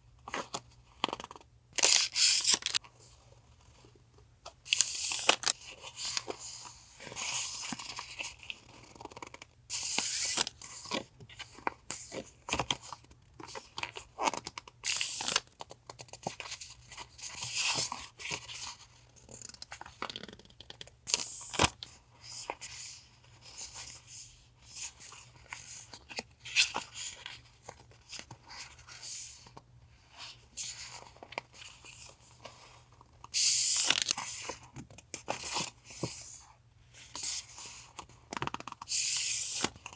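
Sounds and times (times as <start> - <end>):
paper tearing: 1.8 - 2.8
paper rustling and crinkling: 1.8 - 2.9.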